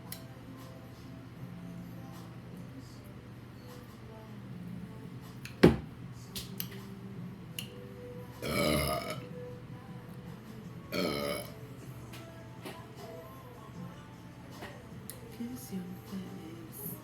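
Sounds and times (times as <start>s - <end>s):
woman burping: 8.4s - 9.3s, 10.9s - 11.6s.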